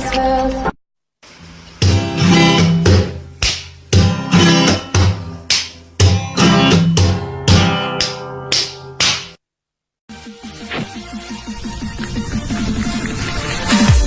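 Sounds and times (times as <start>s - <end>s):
strummed acoustic guitar chords: 1.8s - 8.5s.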